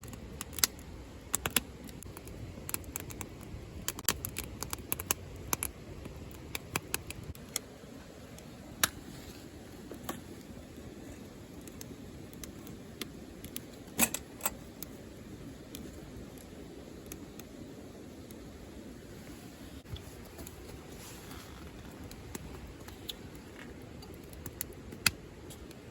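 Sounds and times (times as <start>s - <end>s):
campfire pops and snaps: 0.0s - 9.4s, 11.4s - 14.9s, 15.5s - 18.4s, 22.0s - 25.9s.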